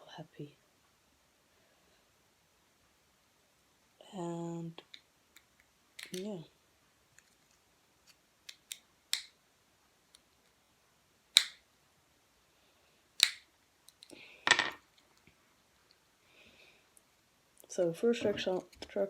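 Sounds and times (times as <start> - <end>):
small parts clicking and tapping: 4.8 - 6.3, 11.4 - 11.6, 13.2 - 16.0.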